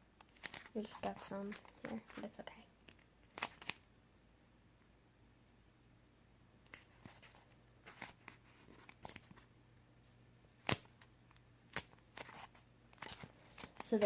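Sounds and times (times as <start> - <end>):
packaging rustling: 0.3 - 2.3, 11.7 - 14.0.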